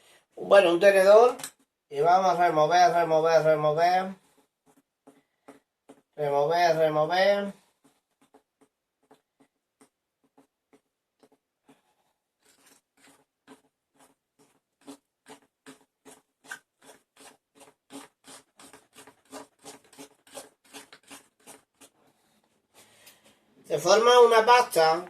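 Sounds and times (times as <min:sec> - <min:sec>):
fork beating batter in bowl: 0:07.7 - 0:22.0.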